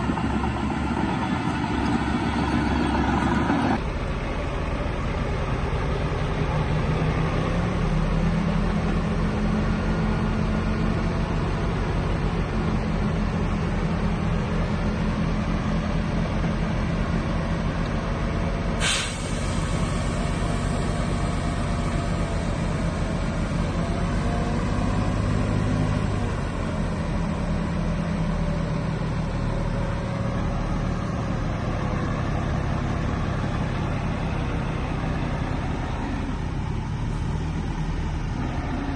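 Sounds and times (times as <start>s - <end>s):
heavy diesel engine under load: 0.0s - 38.9s
sharp hiss: 18.8s - 22.0s.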